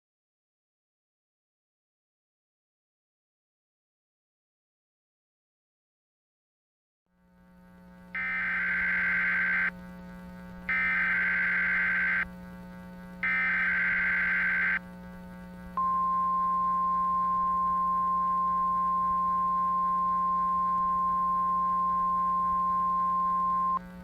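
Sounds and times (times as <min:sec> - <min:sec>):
low steady hum: 0:07.1 - 0:24.0
steady high warning beep: 0:08.2 - 0:09.7, 0:10.7 - 0:12.3, 0:13.2 - 0:14.8, 0:15.8 - 0:23.8.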